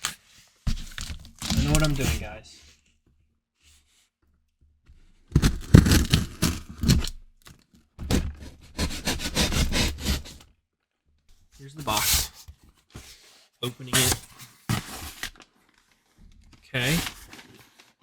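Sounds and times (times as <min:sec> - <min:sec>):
cardboard box being cut and torn: 0:00.0 - 0:02.3, 0:05.3 - 0:07.2, 0:08.0 - 0:10.4.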